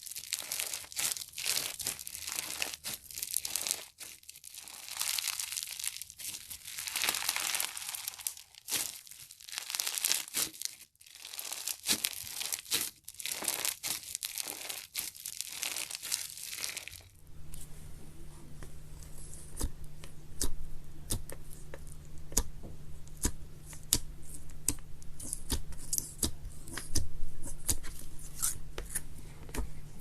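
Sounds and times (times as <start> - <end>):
crunchy slime crackling: 0.0 - 17.2
low steady hum: 0.0 - 30.0.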